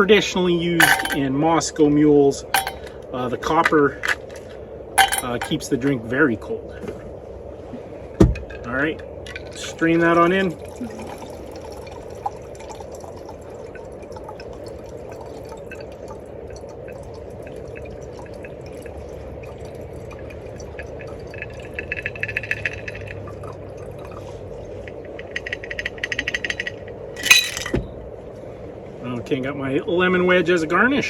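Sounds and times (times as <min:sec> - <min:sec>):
shaker rattling: 0:00.8 - 0:01.2, 0:02.6 - 0:02.9, 0:05.0 - 0:05.6
liquid pouring and dripping: 0:10.5 - 0:24.0.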